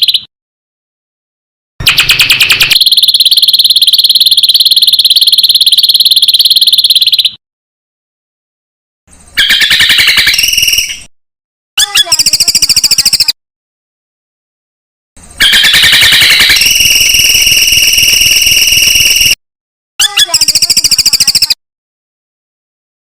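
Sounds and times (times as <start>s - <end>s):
songbird trilling: 2.0s - 7.4s, 9.4s - 11.1s.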